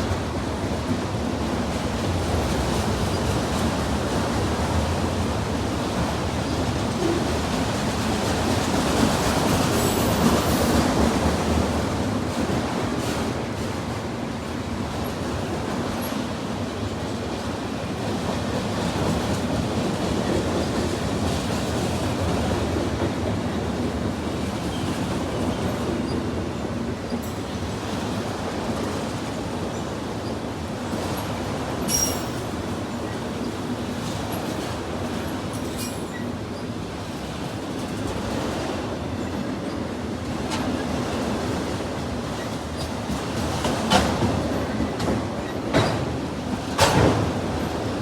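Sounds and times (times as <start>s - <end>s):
freight train rumbling with wheel clatter: 0.0s - 48.0s.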